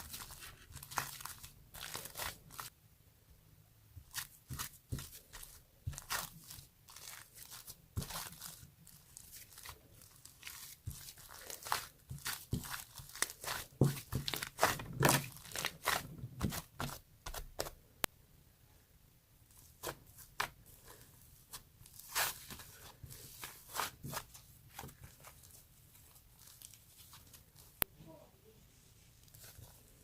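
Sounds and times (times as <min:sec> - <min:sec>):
sticky dough squished and torn: 0:04.0 - 0:17.8.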